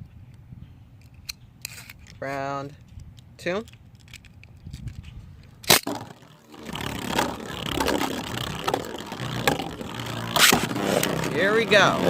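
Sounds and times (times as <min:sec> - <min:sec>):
plastic clicks: 0:03.1 - 0:11.4.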